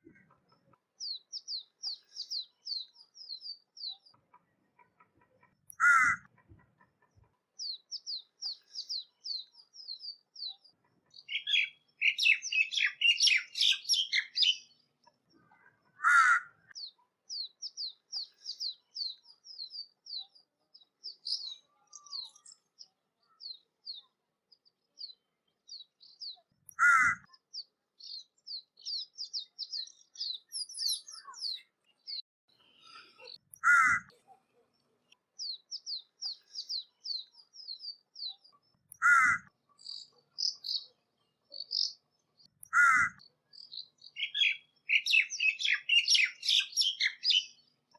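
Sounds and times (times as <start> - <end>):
small birds chirping: 0.0 - 47.9
crow cawing: 5.8 - 6.3, 16.0 - 16.6, 26.8 - 27.2, 33.6 - 34.1, 39.0 - 39.5, 42.7 - 43.2.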